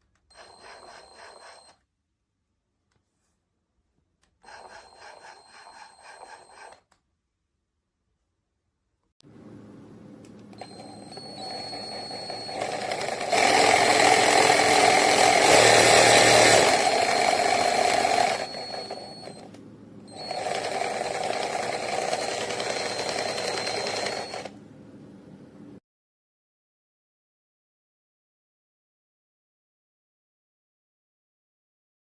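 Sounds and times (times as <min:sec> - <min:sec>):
reciprocating saw running: 0:00.4 - 0:01.7, 0:04.5 - 0:06.8, 0:11.3 - 0:19.5, 0:20.1 - 0:24.6.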